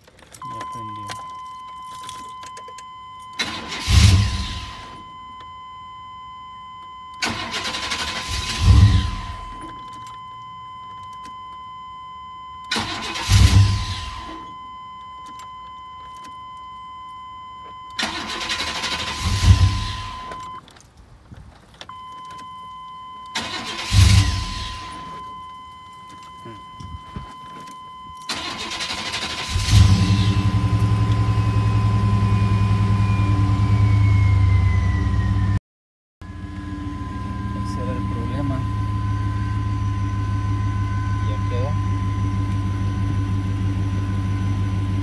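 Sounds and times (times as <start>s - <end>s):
electronic warning tone: 0.4s - 20.6s, 36.2s - 45.0s
engine cranking: 3.2s - 4.7s, 7.2s - 9.3s, 18.0s - 20.0s, 28.2s - 31.2s.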